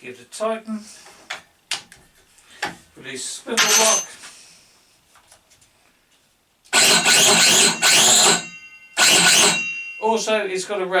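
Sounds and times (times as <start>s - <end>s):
circular saw motor whining: 6.8s - 9.7s.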